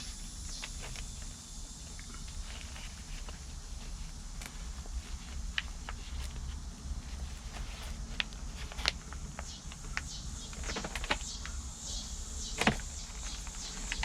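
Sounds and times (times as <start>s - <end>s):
light clicks and rustles of potting: 0.1s - 11.6s.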